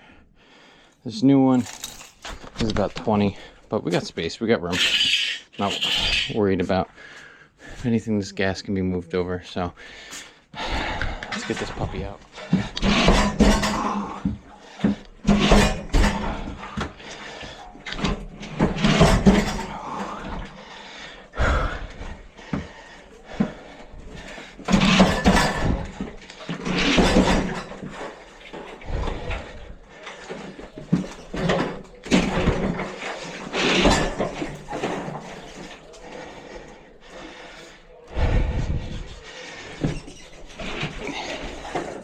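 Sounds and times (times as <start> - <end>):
water heater thumping and scraping: 11.3 - 20.6, 22.1 - 36.7.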